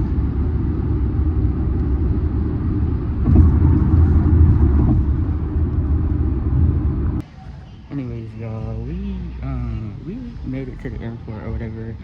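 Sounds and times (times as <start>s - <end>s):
car road and engine noise: 0.0s - 12.0s.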